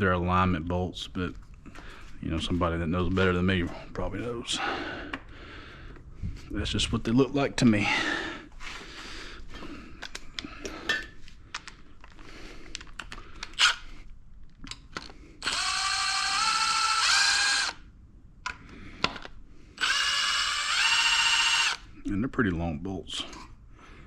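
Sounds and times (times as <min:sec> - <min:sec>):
cordless power tool whine: 0:15.4 - 0:17.8, 0:19.8 - 0:21.8.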